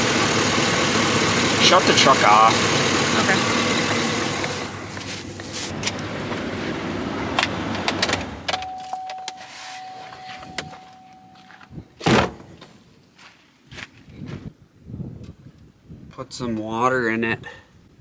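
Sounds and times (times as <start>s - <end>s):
truck engine running: 0.0s - 8.9s
steady high tone: 8.6s - 11.8s.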